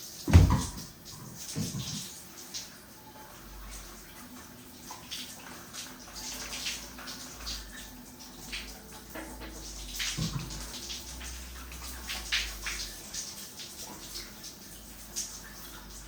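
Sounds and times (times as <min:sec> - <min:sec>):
water splashes: 0:00.0 - 0:02.8
running water: 0:00.0 - 0:16.0.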